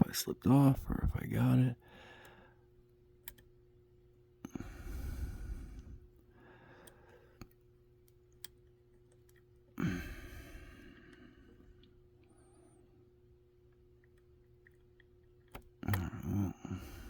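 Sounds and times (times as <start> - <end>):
person breathing: 1.8 - 2.7, 4.4 - 7.5, 9.8 - 13.1, 15.9 - 17.0.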